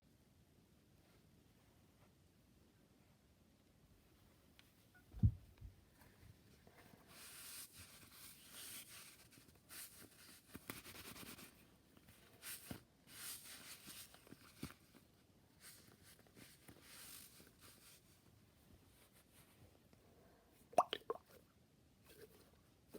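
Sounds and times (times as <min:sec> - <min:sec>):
faint rustling and scraping: 0:04.0 - 0:20.4, 0:22.0 - 0:22.9.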